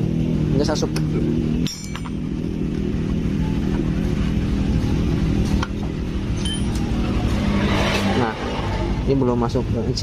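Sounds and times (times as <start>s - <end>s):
engine idling: 0.0s - 7.6s.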